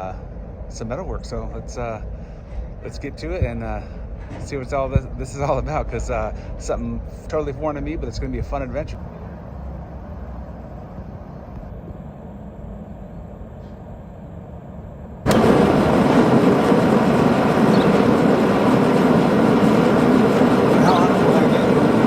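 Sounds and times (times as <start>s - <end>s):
low rumble: 0.0s - 11.9s
gas forge burner roaring: 0.0s - 22.0s.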